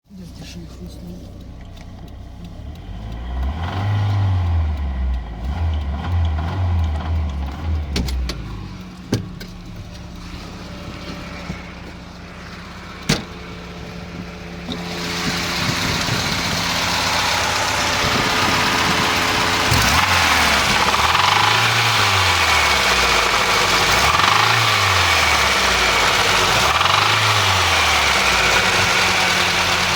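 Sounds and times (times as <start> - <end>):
car engine idling and revving: 0.0 - 29.9
sharp clicks: 0.8 - 11.6.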